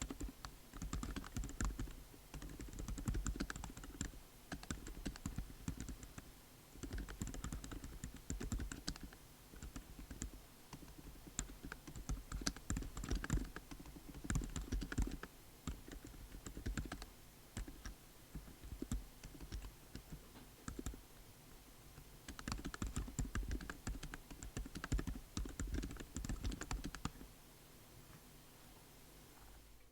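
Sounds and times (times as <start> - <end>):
typing on a mechanical keyboard: 0.0 - 21.0, 22.3 - 27.2.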